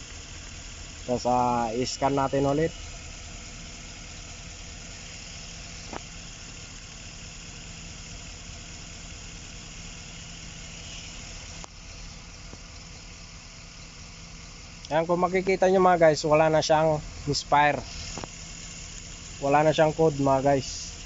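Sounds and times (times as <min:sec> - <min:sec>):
engine idling: 0:00.0 - 0:21.0.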